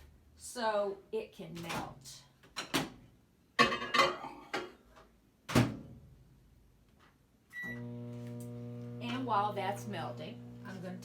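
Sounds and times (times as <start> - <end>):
microwave humming: 7.6 - 11.0.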